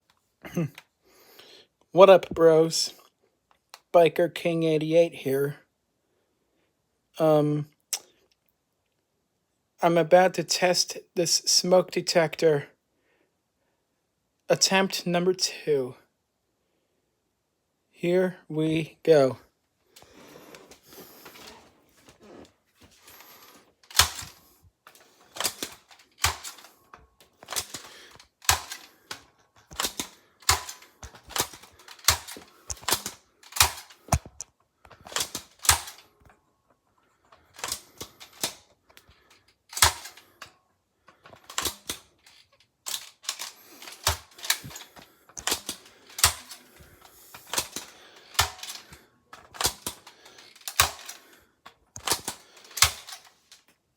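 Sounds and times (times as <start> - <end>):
sharp clicks: 23.1 - 36.4, 37.5 - 40.5, 41.1 - 53.3.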